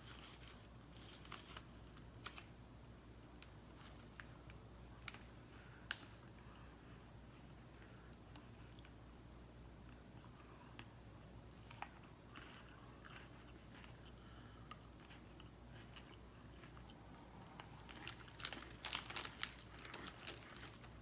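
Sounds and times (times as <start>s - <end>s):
person chewing crunchy snack: 11.7s - 21.0s.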